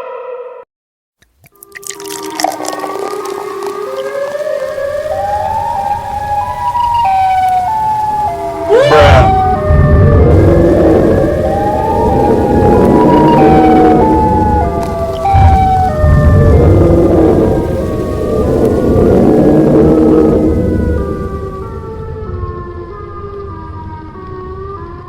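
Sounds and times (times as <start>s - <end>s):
wailing siren-like tone: 1.7s - 25.0s
deep rumble: 2.9s - 23.0s.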